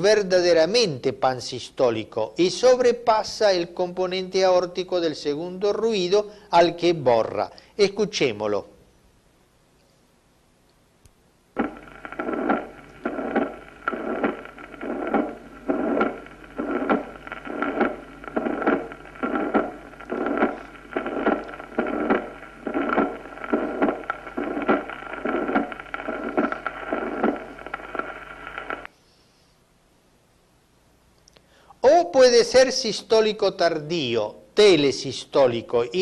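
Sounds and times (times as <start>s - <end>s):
steady hum and hiss: 0.0s - 36.0s
heart murmur: 11.6s - 28.9s.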